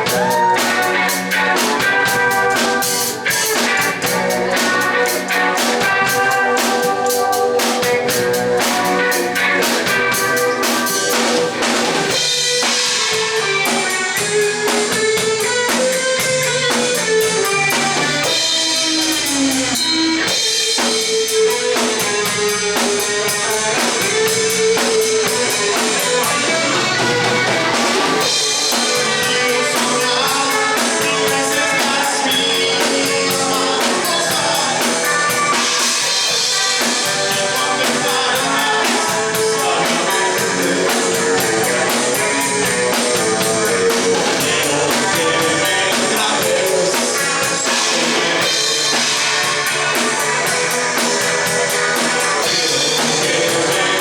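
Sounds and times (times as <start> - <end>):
drum kit beat: 0.0 - 54.0
rock guitar: 0.0 - 54.0.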